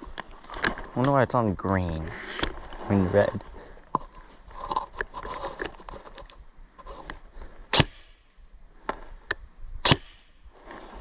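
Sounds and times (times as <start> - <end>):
faint high whine: 0.0 - 11.0
sharp cracks: 7.7 - 8.3, 9.8 - 10.4.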